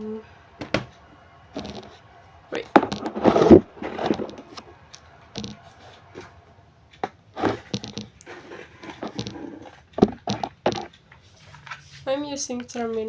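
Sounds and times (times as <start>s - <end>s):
multimeter leads clicking and scraping: 2.8s - 5.6s, 6.9s - 12.1s.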